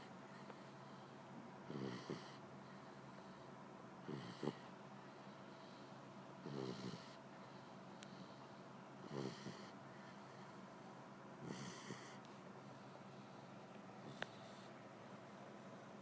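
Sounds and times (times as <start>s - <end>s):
puppy snoring: 1.6s - 2.4s, 4.0s - 4.8s, 6.4s - 7.2s, 9.0s - 10.5s, 11.4s - 12.3s, 14.0s - 14.7s.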